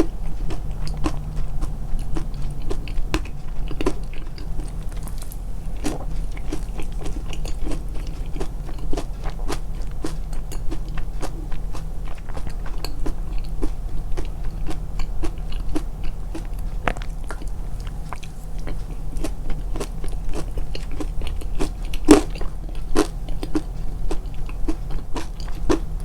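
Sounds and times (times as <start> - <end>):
low hum: 0.0 - 25.0
chewing crunchy food: 0.0 - 26.0
wet mouth clicks: 16.8 - 18.8.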